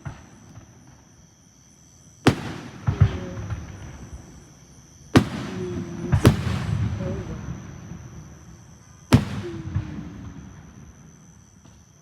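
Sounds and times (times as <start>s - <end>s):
fireworks bangs: 2.2s - 4.5s, 5.1s - 10.9s.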